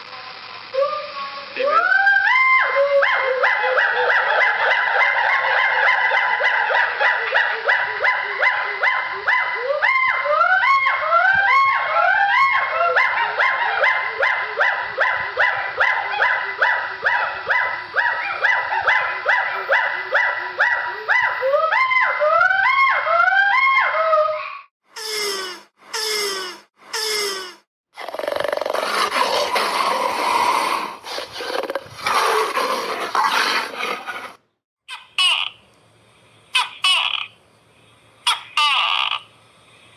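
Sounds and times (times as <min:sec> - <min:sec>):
chorus of whooping animal calls: 0:00.7 - 0:24.7.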